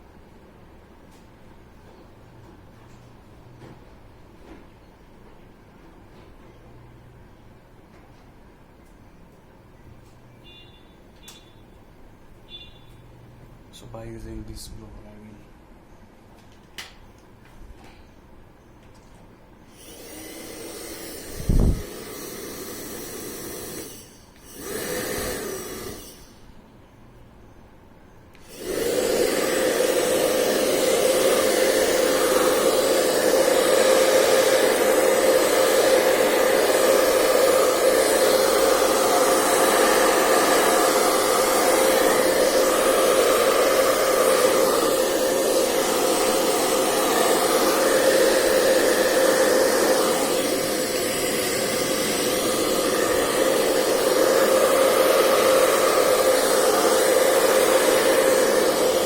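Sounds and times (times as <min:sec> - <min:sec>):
electric air blower whining: 0:19.7 - 0:26.6, 0:28.4 - 0:59.0.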